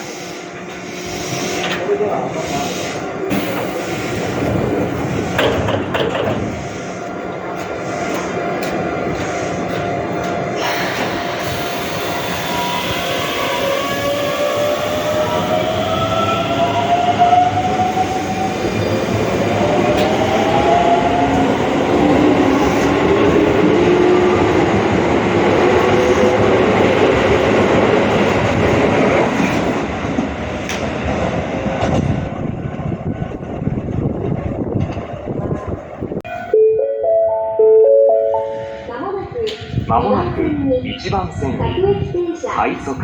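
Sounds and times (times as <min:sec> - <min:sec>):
rail clicks: 0:00.6 - 0:12.6, 0:19.1 - 0:36.2.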